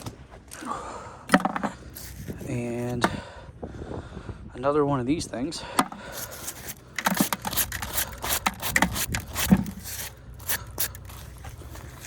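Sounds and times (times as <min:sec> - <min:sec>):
metal scrap scraping and knocking: 0:01.3 - 0:02.4, 0:05.8 - 0:12.0.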